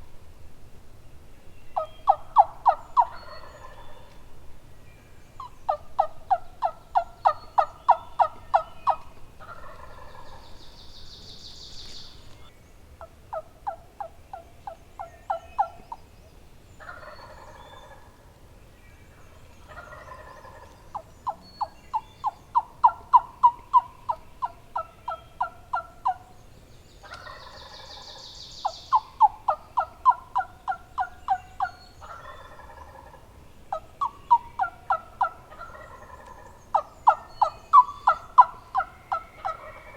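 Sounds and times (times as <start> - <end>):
turkey yelping: 1.8 - 4.1, 5.4 - 10.4, 19.7 - 26.2, 27.0 - 39.9
rough turkey calls: 1.8 - 16.1, 16.8 - 18.4, 19.6 - 26.4, 27.0 - 39.9.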